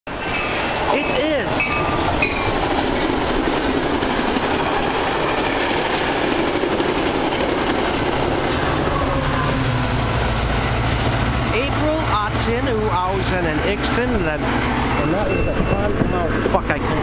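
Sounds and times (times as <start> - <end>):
train wheels rushing on rails: 0.1 - 17.0.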